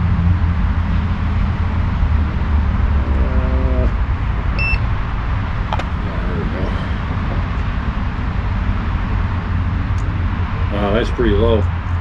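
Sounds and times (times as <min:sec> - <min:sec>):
steady low rumble: 0:00.0 - 0:12.0
multimeter beep: 0:04.6 - 0:04.8.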